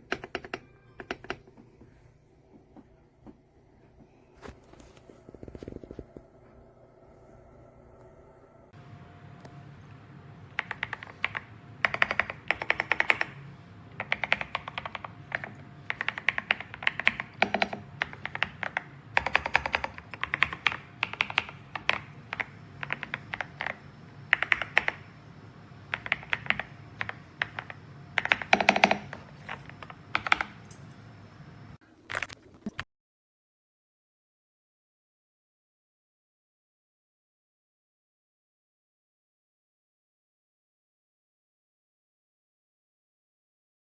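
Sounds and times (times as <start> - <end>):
typing on mechanical keyboard: 0.0 - 1.6, 10.6 - 25.1, 25.9 - 30.7.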